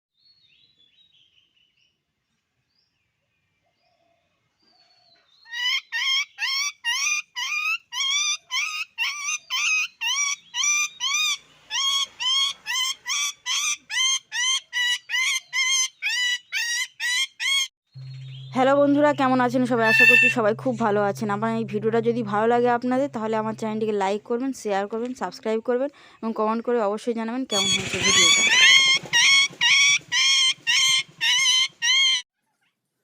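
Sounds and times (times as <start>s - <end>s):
bird calling: 4.7s - 21.3s, 27.5s - 32.2s.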